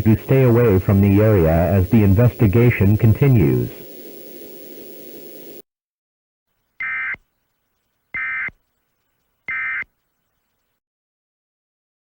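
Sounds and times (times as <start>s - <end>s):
faint steady hiss: 0.0s - 5.6s
harsh two-tone beeps: 6.8s - 7.2s, 8.2s - 8.5s, 9.5s - 9.9s.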